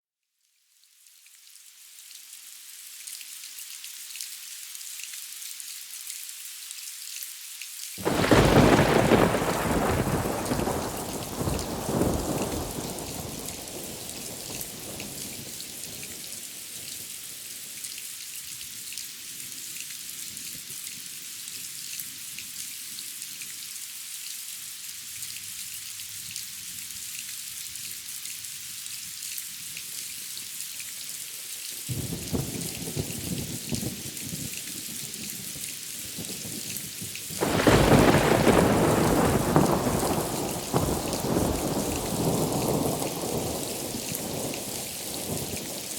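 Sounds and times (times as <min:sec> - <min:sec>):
steady rain falling: 0:00.7 - 0:45.9
thunderclap rumbling: 0:08.0 - 0:15.5, 0:37.4 - 0:45.9.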